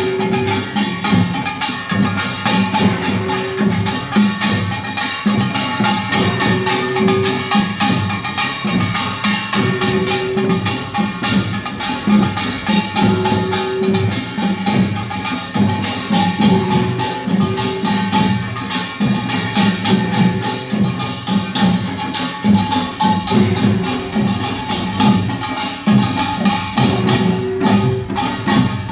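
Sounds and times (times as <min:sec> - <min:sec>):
ringing gong tone: 0:00.0 - 0:15.0
percussion band playing: 0:00.0 - 0:28.9.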